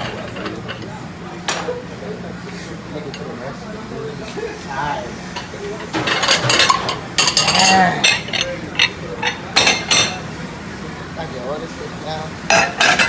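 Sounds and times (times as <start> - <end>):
dishes and cutlery clattering: 0.0 - 1.8, 4.7 - 10.2, 12.5 - 13.0.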